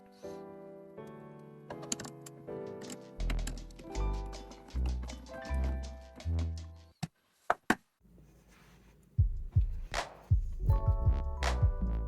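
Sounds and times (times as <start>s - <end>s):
bass drum kicks: 9.2s - 12.0s.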